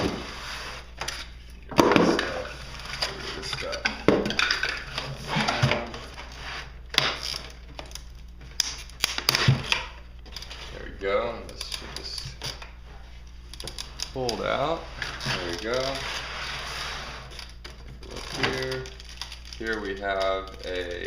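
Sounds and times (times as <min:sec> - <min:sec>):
cardboard and plastic packaging rustling: 0:09.2 - 0:21.0.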